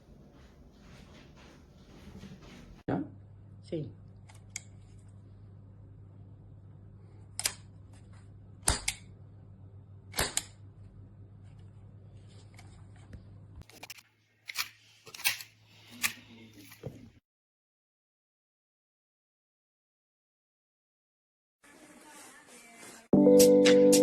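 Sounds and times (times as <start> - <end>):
steady low hum: 0.0 - 13.6.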